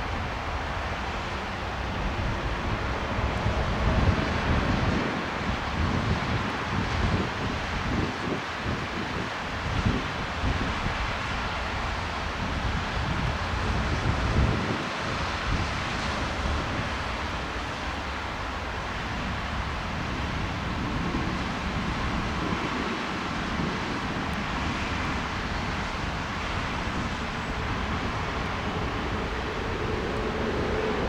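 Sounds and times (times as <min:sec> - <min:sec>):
wind buffeting microphone: 0:00.0 - 0:31.0
jet engines rushing: 0:11.1 - 0:31.0.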